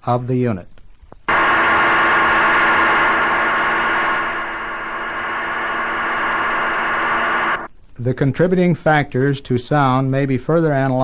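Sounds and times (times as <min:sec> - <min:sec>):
loud gear whine: 0:01.3 - 0:07.7
rushing noise: 0:01.3 - 0:07.7.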